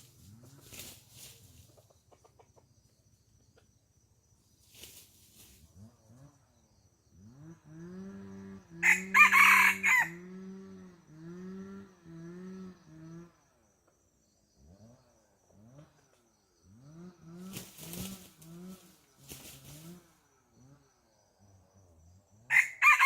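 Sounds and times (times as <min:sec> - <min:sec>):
rooster crowing: 0:08.8 - 0:10.4, 0:22.5 - 0:23.0.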